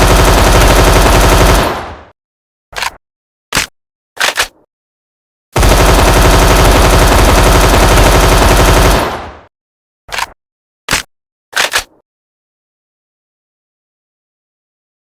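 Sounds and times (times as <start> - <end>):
machine gun full-auto burst: 0.0 - 2.1, 5.6 - 9.5.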